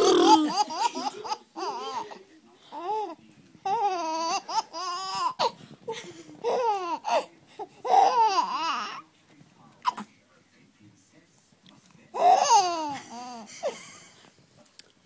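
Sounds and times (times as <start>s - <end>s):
high wobbling vocal noises: 0.0s - 0.9s
baby laughing and babbling: 0.0s - 5.6s, 6.4s - 9.0s, 12.2s - 13.5s.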